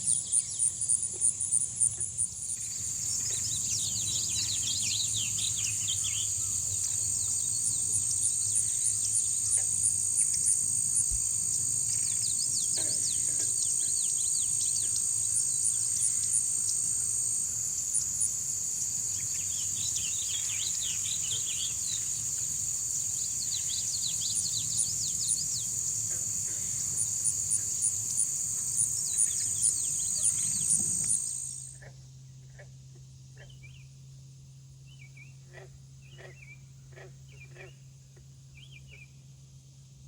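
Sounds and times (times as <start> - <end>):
high-pitched insect trill: 0.0 - 31.8.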